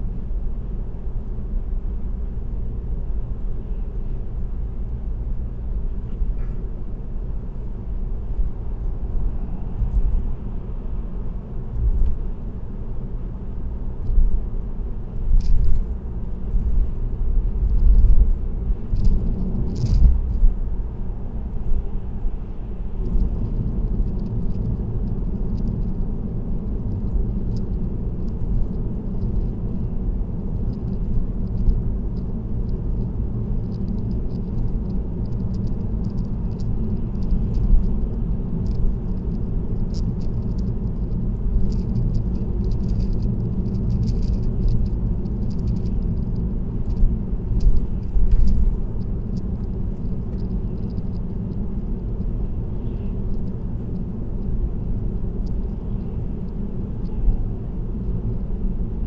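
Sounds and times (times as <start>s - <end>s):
car road and tyre rumble: 0.0s - 59.0s
small rattling ticks: 17.6s - 18.3s, 18.9s - 20.4s, 23.0s - 58.4s.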